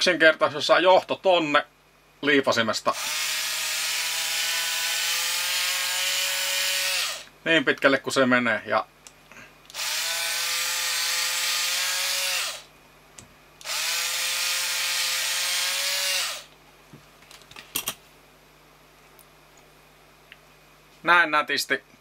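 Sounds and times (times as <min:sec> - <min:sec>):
cordless drill spinning: 0:03.0 - 0:07.3, 0:09.7 - 0:12.7, 0:13.6 - 0:16.5.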